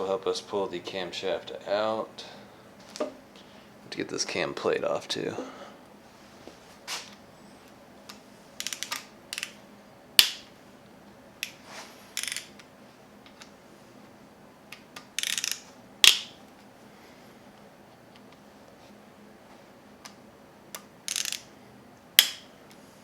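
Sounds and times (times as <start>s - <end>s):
hand ratchet clicking: 8.1s - 9.6s, 12.2s - 12.6s, 15.2s - 16.3s, 21.1s - 21.5s.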